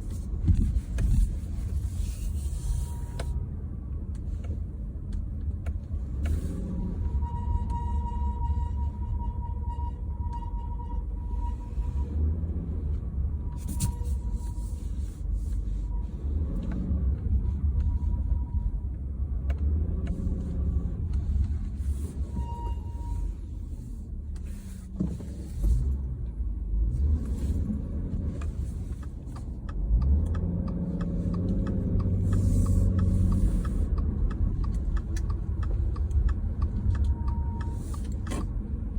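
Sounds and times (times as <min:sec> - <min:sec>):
car road rumble: 0:00.0 - 0:38.9.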